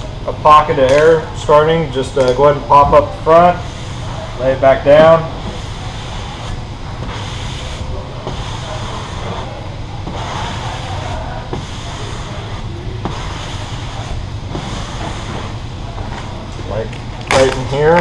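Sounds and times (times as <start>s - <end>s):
squeegee swishing across film: 5.0s - 15.6s.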